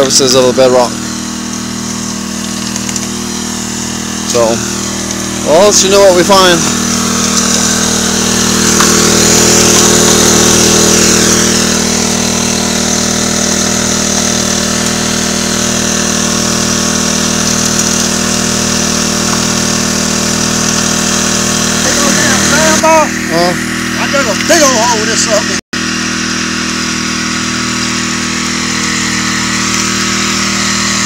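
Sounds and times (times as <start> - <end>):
small gasoline engine running: 0.0 - 31.0.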